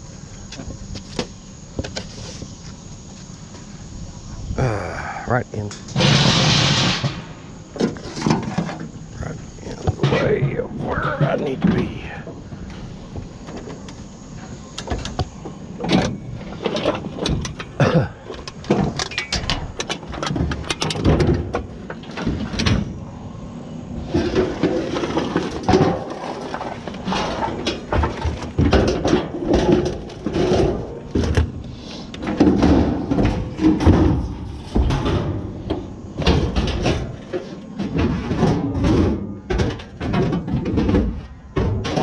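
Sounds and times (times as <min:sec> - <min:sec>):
scrap metal knocks and clanks: 0:05.8 - 0:13.9, 0:24.0 - 0:42.0.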